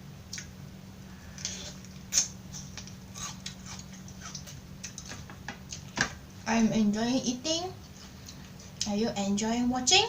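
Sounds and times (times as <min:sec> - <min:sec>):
chewing crunchy vegetables: 0:01.4 - 0:06.0.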